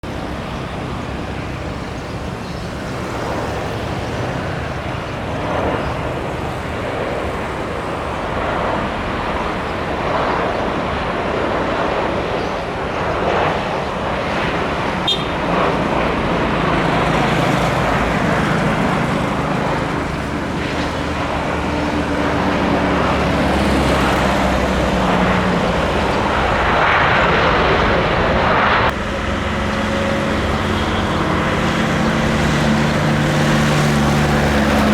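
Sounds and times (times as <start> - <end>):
droning engine: 0.0 - 34.9
road traffic passing: 0.0 - 34.9.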